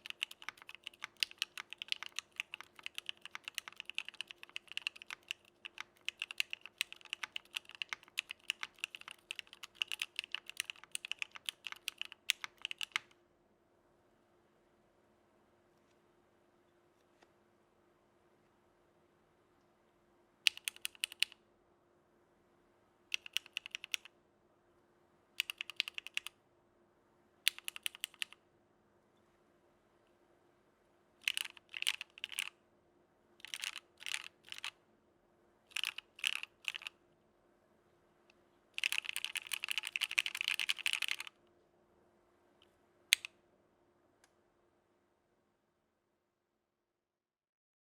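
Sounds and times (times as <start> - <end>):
mechanical keyboard typing: 0.0 - 13.1, 20.5 - 21.4, 23.1 - 24.1, 25.4 - 26.3, 27.5 - 28.4, 31.2 - 32.5, 33.4 - 34.7, 35.7 - 36.9, 38.8 - 41.3.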